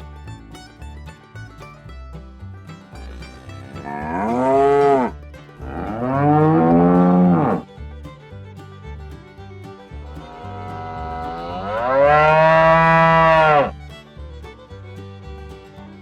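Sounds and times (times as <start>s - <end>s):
plucked-string background music: 0.0s - 16.0s
cow mooing: 3.7s - 7.6s, 10.3s - 13.7s.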